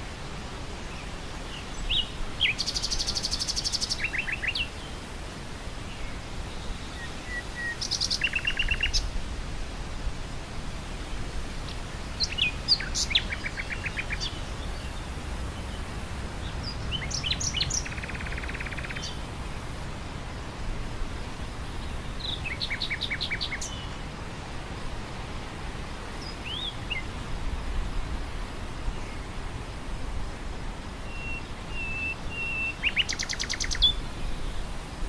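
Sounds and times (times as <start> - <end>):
low rush of wind: 0.0 - 35.0
bird singing whistles and trills: 1.7 - 4.7, 6.9 - 9.0, 12.2 - 14.4, 31.1 - 34.0.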